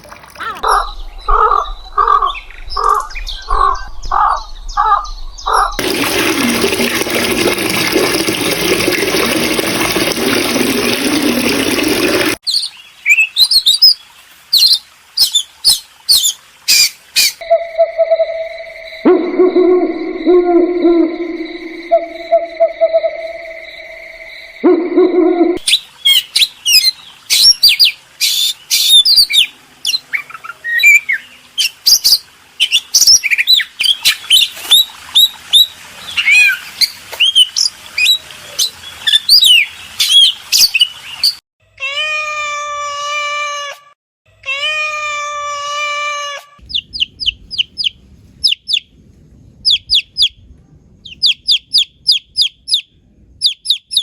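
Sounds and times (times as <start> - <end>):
very high chirps: 17.4 - 24.6
hoot-like tone: 17.4 - 25.6
bird chirps and whistles: 51.1 - 54.0.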